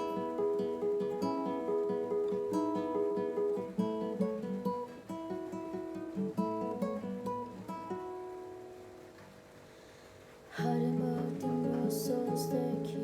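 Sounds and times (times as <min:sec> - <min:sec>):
acoustic guitar playing: 0:00.0 - 0:13.0.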